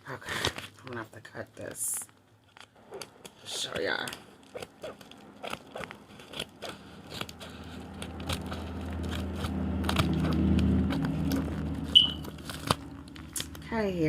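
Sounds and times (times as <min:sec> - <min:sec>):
package being cut open: 0:02.5 - 0:13.6
low rumble: 0:05.0 - 0:14.0.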